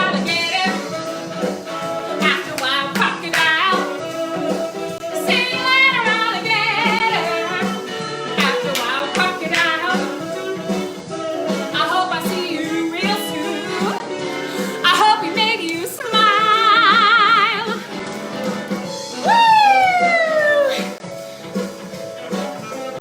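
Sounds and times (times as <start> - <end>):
woman singing: 0.0 - 18.0
instrumental backing with beat: 0.0 - 23.0.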